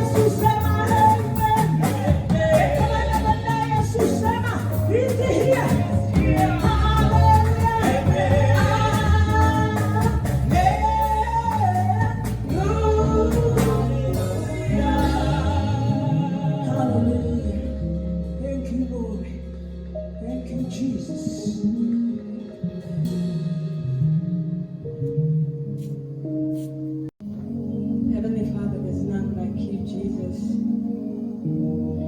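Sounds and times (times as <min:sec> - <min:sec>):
band with bass and drums: 0:00.0 - 0:21.9, 0:22.8 - 0:24.9
person singing: 0:00.0 - 0:24.6.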